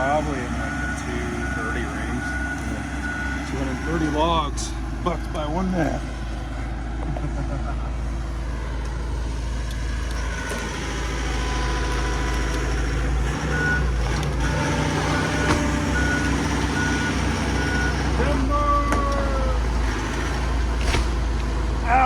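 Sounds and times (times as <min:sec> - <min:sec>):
backup alarm beeping: 0:00.0 - 0:04.6, 0:13.4 - 0:19.2
heavy vehicle engine running: 0:00.0 - 0:22.0.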